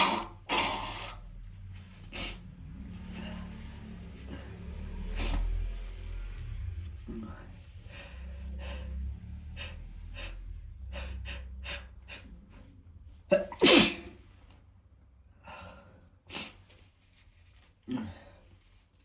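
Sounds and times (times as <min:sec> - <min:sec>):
man sneezing: 0:13.3 - 0:14.2.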